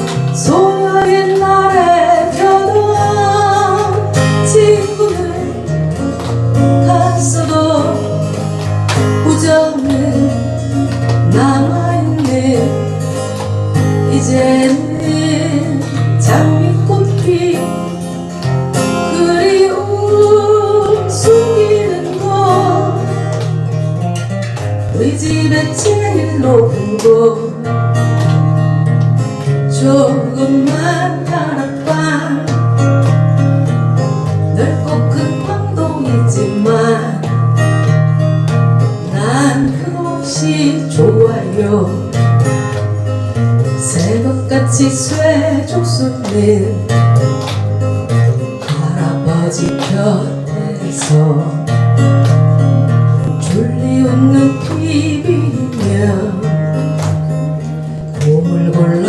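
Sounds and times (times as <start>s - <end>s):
acoustic guitar music: 0.0s - 59.0s.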